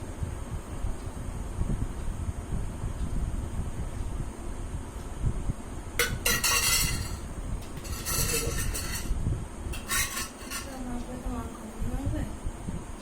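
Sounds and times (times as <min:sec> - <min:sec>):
dishes and utensils clinking: 0:06.0 - 0:09.2, 0:09.8 - 0:10.9.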